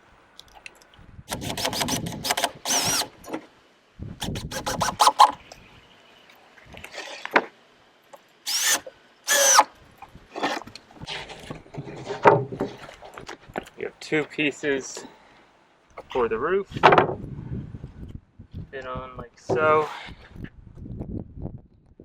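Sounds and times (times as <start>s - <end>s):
power drill driving screws: 1.3s - 3.2s, 4.2s - 5.4s, 8.5s - 9.7s.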